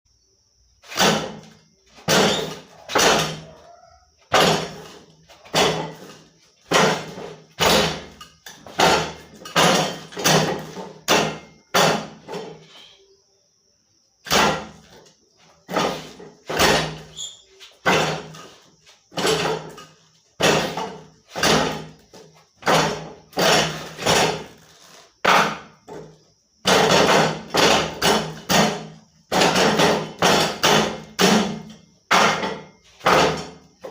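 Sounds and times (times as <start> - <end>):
wooden knocks on training dummy: 25.3 - 33.9.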